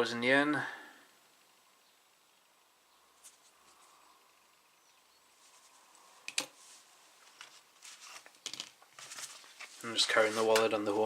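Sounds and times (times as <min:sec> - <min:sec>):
rustling: 0:03.1 - 0:04.2, 0:05.2 - 0:11.0.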